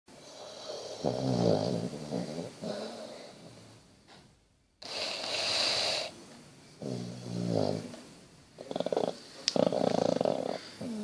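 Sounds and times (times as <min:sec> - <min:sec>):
dog snoring: 0:00.2 - 0:03.5, 0:04.8 - 0:06.1, 0:06.8 - 0:08.0, 0:08.6 - 0:11.0
hissing breath: 0:04.8 - 0:06.2.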